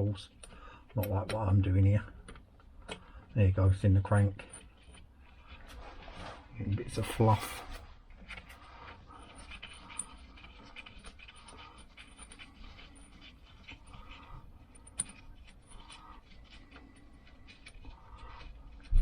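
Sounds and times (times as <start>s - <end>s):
faint breathing puffs: 0.4s - 1.0s, 2.7s - 3.4s, 8.6s - 19.0s.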